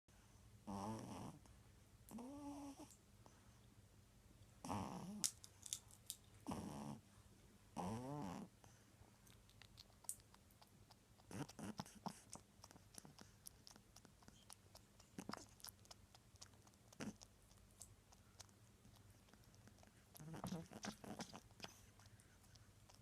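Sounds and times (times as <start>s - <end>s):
dog snoring: 0.6s - 1.5s, 2.1s - 2.9s, 4.6s - 5.2s, 6.4s - 7.0s, 7.8s - 8.8s, 11.2s - 14.4s, 16.4s - 17.3s, 19.7s - 21.8s.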